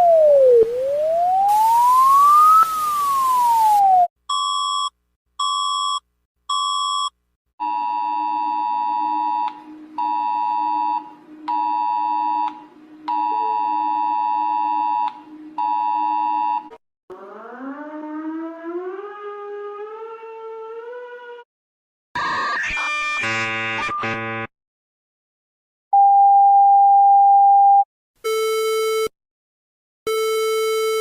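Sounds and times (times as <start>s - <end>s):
siren tone sweeping up and down: 0.0s - 4.1s, 17.1s - 21.4s
hiss: 1.5s - 4.0s.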